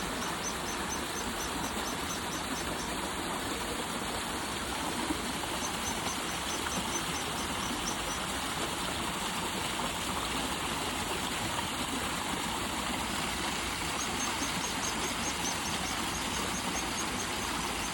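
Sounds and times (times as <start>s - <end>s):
river water rushing: 0.0s - 17.9s
faint high chirps: 5.6s - 8.2s.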